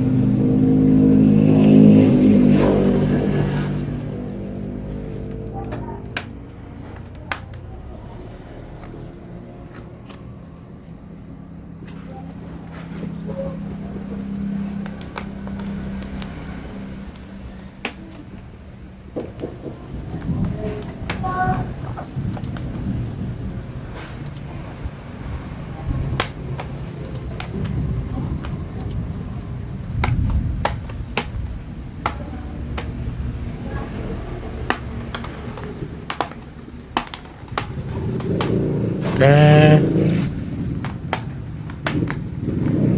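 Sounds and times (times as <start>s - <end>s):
low rumble of handling noise: 1.8s - 42.9s
plastic clips snapping loose: 5.2s - 7.7s, 26.1s - 29.0s, 29.9s - 33.4s, 34.2s - 38.6s.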